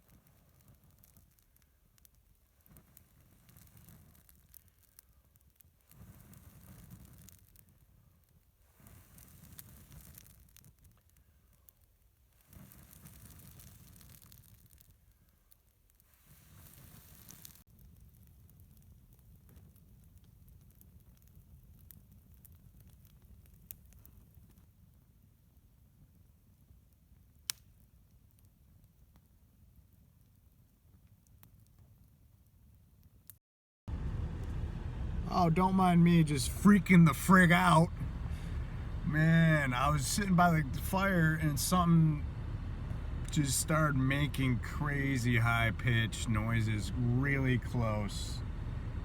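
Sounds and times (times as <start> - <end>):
campfire crackling and popping: 0.0 - 49.0
low steady rumble: 33.9 - 49.0.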